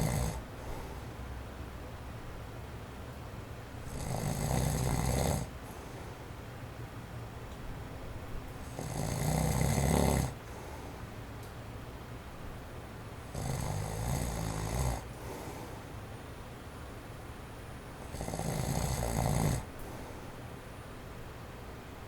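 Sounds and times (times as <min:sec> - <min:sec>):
man snoring: 0:00.0 - 0:00.4, 0:03.9 - 0:05.5, 0:08.6 - 0:10.4, 0:13.3 - 0:15.4, 0:18.1 - 0:19.7
electric fan running: 0:00.0 - 0:22.0.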